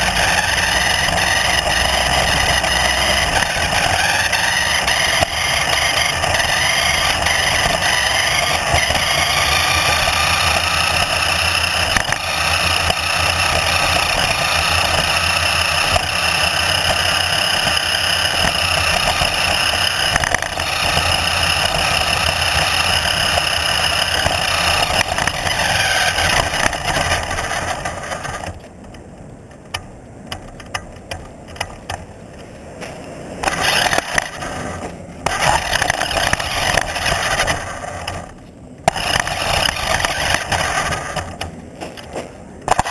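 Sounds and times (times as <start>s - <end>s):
motor whining: 0.0s - 28.6s, 33.4s - 41.5s.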